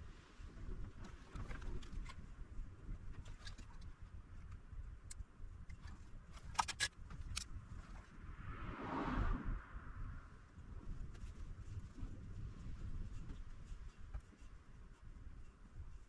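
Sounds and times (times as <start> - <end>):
low steady rumble: 7.2 - 14.2.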